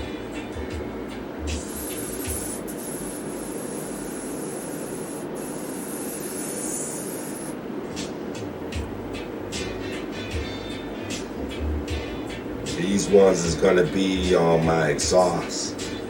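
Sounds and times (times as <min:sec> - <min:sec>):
air hissing through valve: 0:01.5 - 0:07.6.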